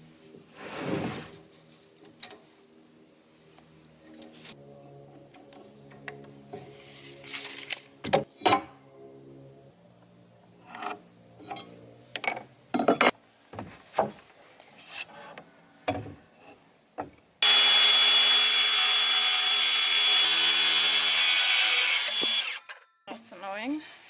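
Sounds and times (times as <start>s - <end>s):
wooden knocks and clatter: 12.3s - 14.2s
power tool whining: 17.4s - 22.8s.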